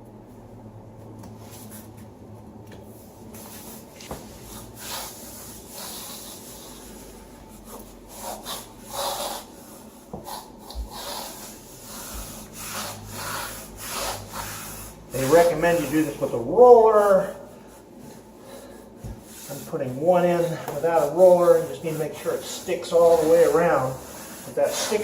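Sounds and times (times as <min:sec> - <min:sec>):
floor tile scuffing: 0:01.0 - 0:05.2.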